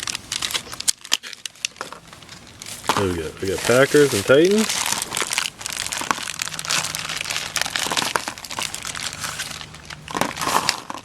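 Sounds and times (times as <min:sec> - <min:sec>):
faint steady hum: 0:00.0 - 0:11.0
plastic packs tearing: 0:00.0 - 0:11.0
plastic wrappers crinkling: 0:00.0 - 0:11.0.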